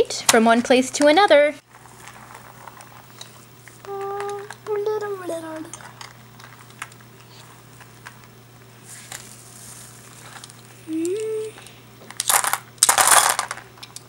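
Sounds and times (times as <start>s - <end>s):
crinkling and rustling: 1.6s - 14.0s
person humming: 10.8s - 11.8s.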